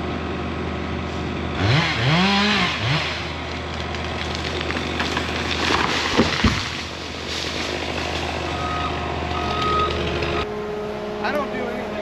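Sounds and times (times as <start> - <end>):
heavy equipment engine running: 0.0 - 12.0
sharp knocks: 5.1 - 6.8
reversing alarm beeping: 8.5 - 10.5.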